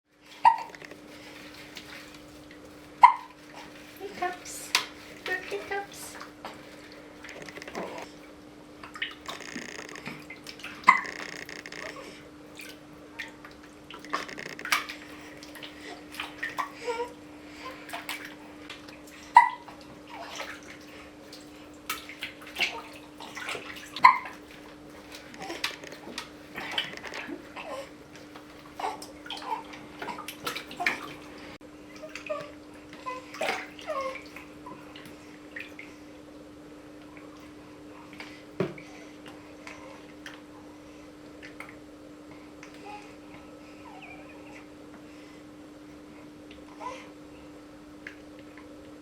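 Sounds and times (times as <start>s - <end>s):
water sloshing and splashing: 0.1s - 44.7s
baby hiccupping: 7.3s - 8.1s.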